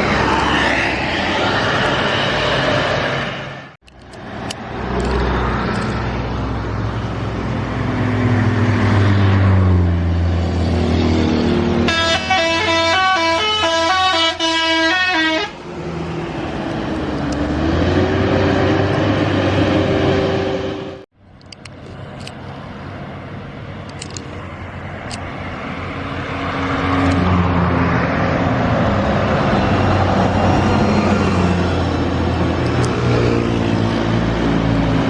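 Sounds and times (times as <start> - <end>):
bus engine running under load: 0.0 - 35.0
multi-note bus horn tune: 11.8 - 15.6.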